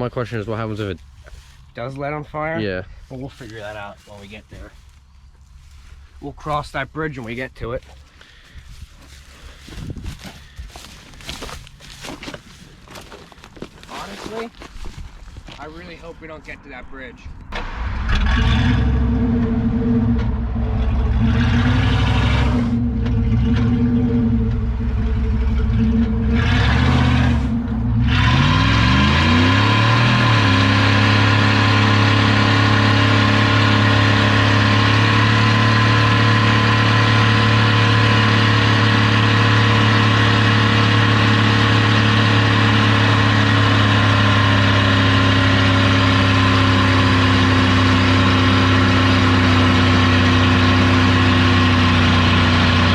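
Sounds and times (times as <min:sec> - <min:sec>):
truck engine revving: 0:17.6 - 0:52.9.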